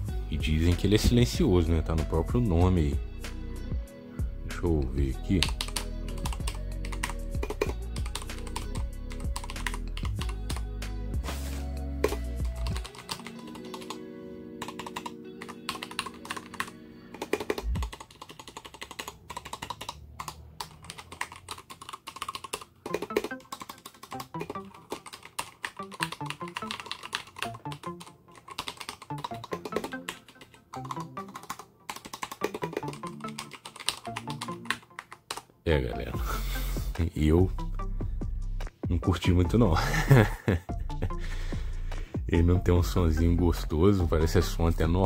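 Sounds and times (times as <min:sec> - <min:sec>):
background music: 0:00.0 - 0:18.0, 0:22.6 - 0:45.0
mechanical keyboard typing: 0:05.3 - 0:10.6, 0:12.0 - 0:35.5.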